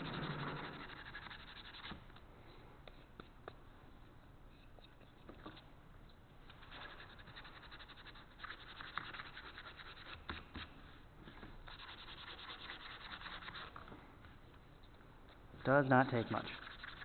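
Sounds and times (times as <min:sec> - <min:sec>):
sandpaper rubbing on wood: 0:00.0 - 0:02.0, 0:06.6 - 0:10.2, 0:11.7 - 0:13.7, 0:15.7 - 0:17.0.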